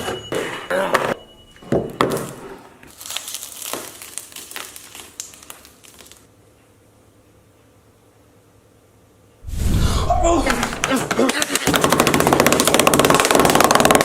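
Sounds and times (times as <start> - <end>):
crinkling and clicking handling noise: 2.1 - 6.3.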